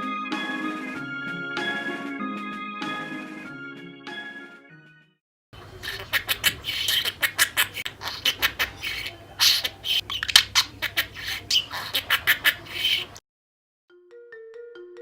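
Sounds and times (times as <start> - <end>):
budgerigar chattering and warbling: 5.6 - 13.2.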